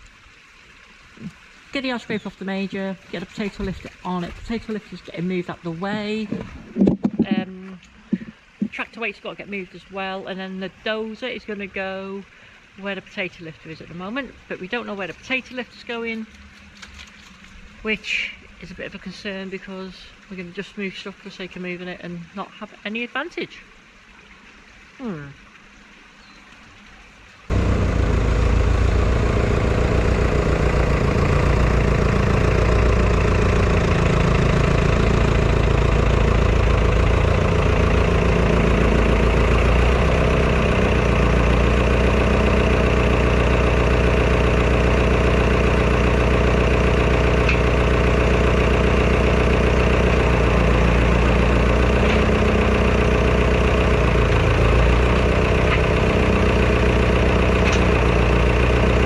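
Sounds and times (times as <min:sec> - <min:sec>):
large engine idling: 0:01.2 - 0:06.6, 0:27.5 - 0:59.0.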